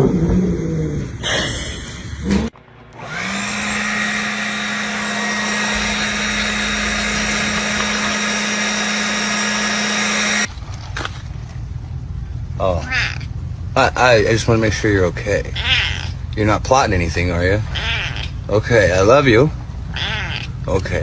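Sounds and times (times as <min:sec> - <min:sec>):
small electric motor whining: 0:02.9 - 0:10.5.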